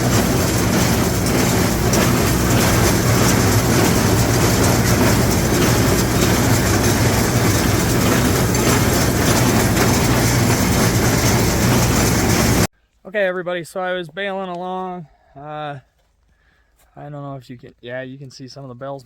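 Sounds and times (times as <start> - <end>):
hay baler clattering: 0.0 - 12.7
tractor diesel engine running: 0.0 - 12.7.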